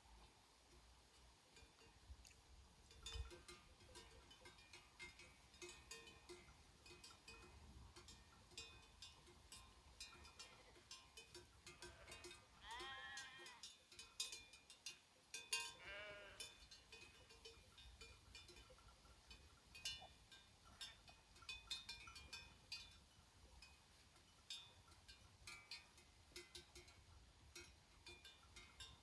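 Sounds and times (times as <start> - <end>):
sheep bells clinking: 0.7 - 29.0
sheep bleating: 11.8 - 13.6, 15.8 - 16.5.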